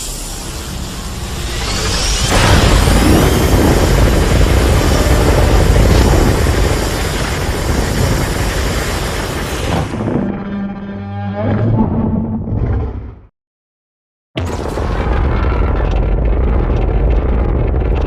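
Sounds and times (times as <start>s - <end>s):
loud hissing blast: 0.0s - 10.0s
heavy rumble: 0.0s - 13.3s, 14.4s - 18.0s.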